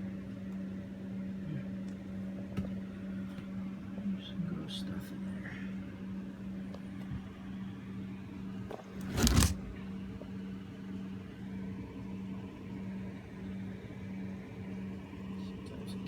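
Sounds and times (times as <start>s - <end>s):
loud noisy scrape: 9.0s - 9.8s.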